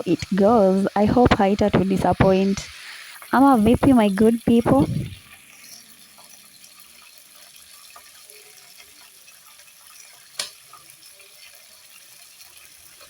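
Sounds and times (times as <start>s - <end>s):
pot hissing on stove: 0.0s - 7.4s.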